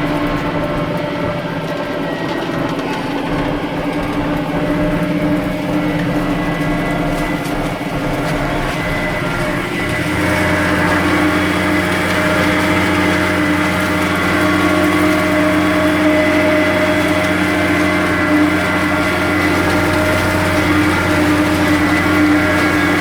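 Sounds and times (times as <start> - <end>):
tractor engine droning: 0.0 - 23.0.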